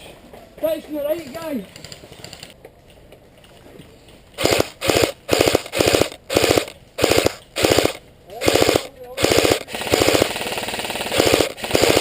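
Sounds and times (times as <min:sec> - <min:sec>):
airsoft gun firing bursts: 0:04.4 - 0:12.0.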